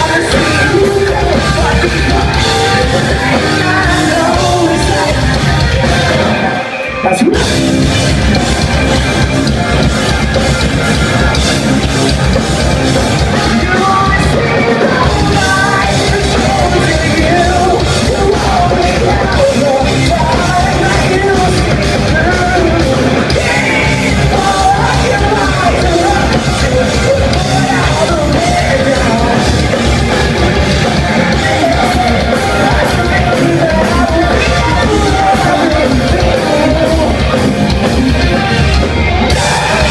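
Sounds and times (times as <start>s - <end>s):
person singing: 0.0s - 9.6s, 12.9s - 39.9s
drums: 0.0s - 39.9s
rock band playing live: 0.0s - 39.9s.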